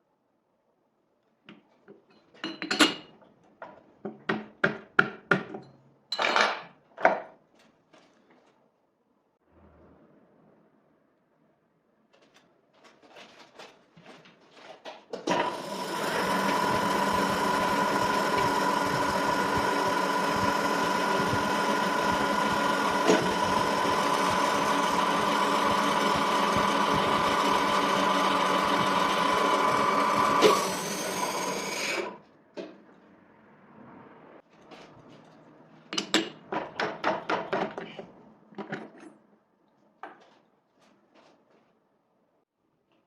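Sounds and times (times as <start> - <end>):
metal lathe whining: 15.3 - 32.2.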